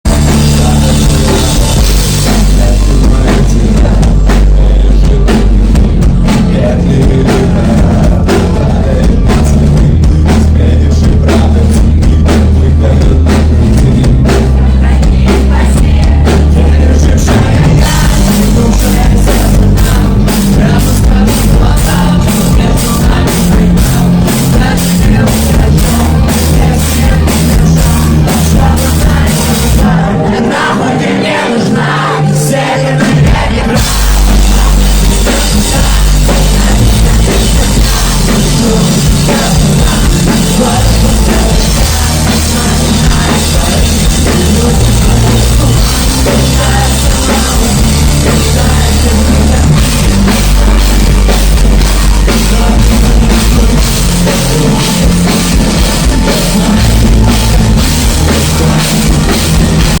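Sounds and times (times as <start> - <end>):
loud rock band playing: 0.0 - 60.0.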